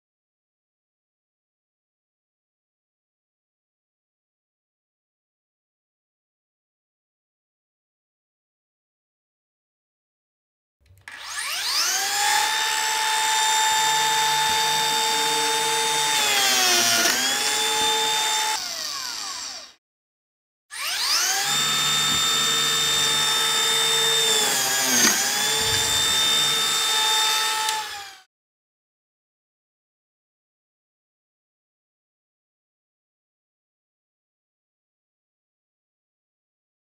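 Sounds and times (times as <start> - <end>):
biscuit joiner motor whine: 10.9 - 19.8, 20.7 - 28.3.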